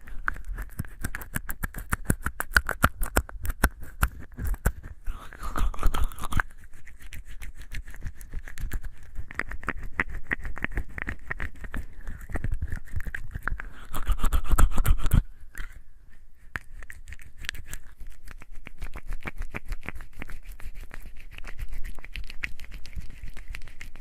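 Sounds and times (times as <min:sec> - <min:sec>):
hands lathering with soap: 0:05.2 - 0:15.2, 0:16.6 - 0:24.0.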